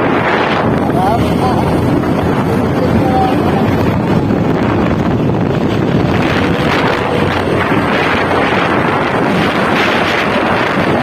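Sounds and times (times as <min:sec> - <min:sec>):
motorcycle engine: 0:00.0 - 0:11.0
road noise: 0:00.0 - 0:11.0
wind noise on microphone: 0:00.0 - 0:11.0.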